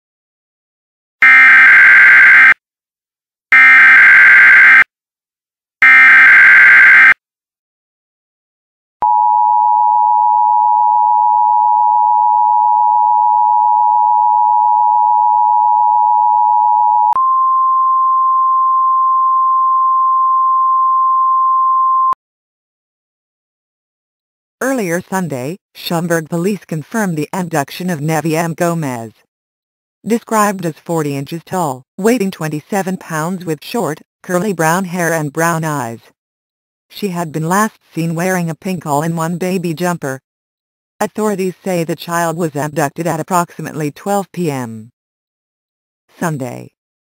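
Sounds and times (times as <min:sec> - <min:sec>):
steady weather alert tone: 0:03.6 - 0:04.8, 0:05.8 - 0:07.2.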